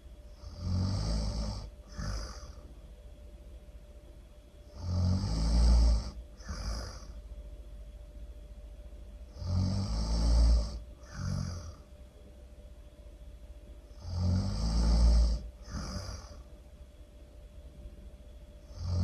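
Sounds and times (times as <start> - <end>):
person snoring loudly: 0.3 - 2.7, 4.7 - 7.2, 9.3 - 11.8, 13.9 - 16.5, 18.6 - 19.0
soft breath: 1.7 - 2.8.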